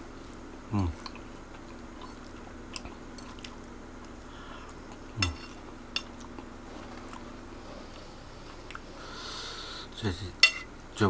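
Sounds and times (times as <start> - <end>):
crackers crunching while chewed: 0.3 - 7.3.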